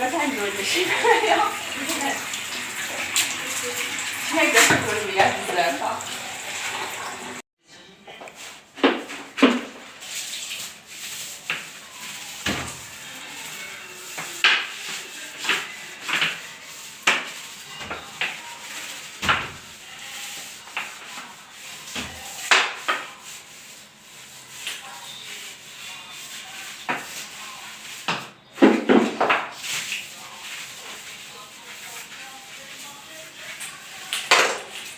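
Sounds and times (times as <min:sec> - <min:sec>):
scrubbing a surface: 0:00.0 - 0:07.4, 0:08.4 - 0:34.9.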